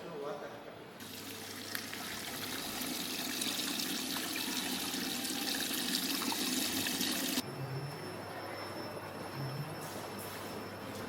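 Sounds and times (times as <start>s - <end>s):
water rushing into washer drum: 1.0s - 7.4s.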